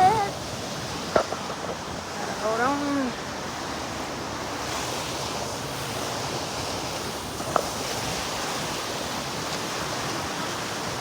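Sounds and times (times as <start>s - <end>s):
waterfall rushing: 0.0s - 0.4s.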